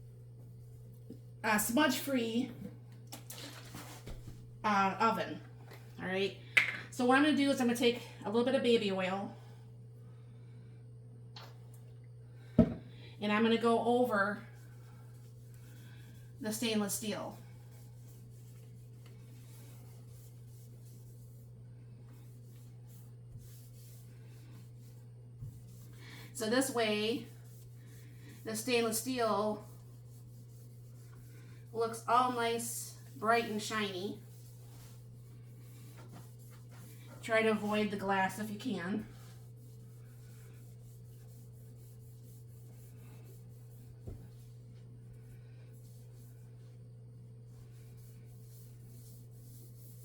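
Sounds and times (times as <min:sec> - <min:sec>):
steady low hum: 0:04.0 - 0:50.0
soft knock: 0:12.6 - 0:12.9
cloth rubbing on stainless steel: 0:13.4 - 0:50.0.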